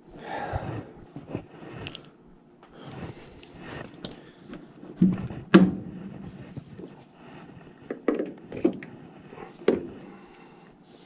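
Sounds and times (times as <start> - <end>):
knocks and clunks of tools: 7.9 - 8.9, 9.6 - 9.9.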